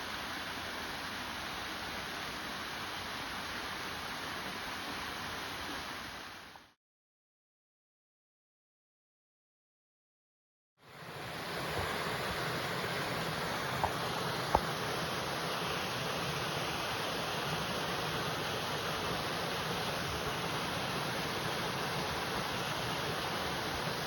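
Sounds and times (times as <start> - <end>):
water rushing: 10.9 - 24.0.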